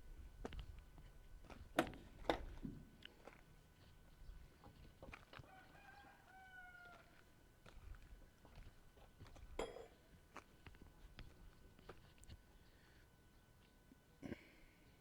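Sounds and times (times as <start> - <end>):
rooster crowing faintly: 5.3 - 7.3.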